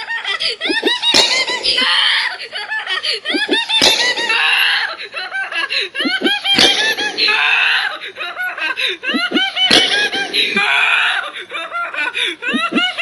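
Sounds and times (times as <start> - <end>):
high-pitched laughter: 0.0 - 13.0
sharp click: 0.7 - 2.0, 3.3 - 4.5, 6.0 - 7.4, 9.2 - 10.6.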